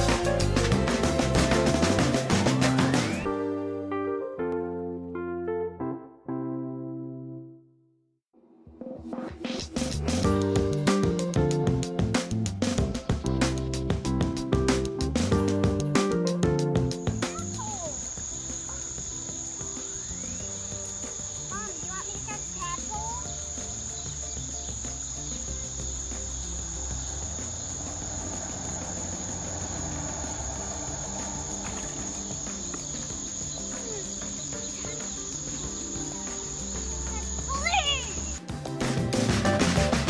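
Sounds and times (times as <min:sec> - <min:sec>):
soft background music: 0:00.0 - 0:07.4, 0:10.1 - 0:40.0
crickets trilling: 0:17.0 - 0:38.4.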